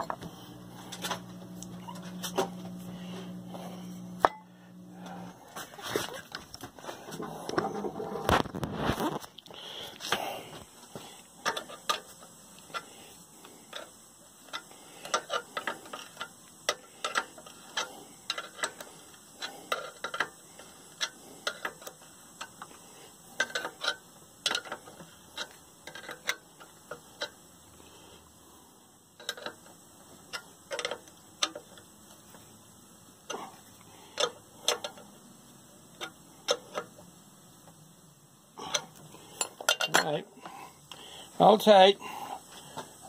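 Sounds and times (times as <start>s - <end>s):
hand ratchet clicking: 13.7s - 22.8s, 23.4s - 27.4s.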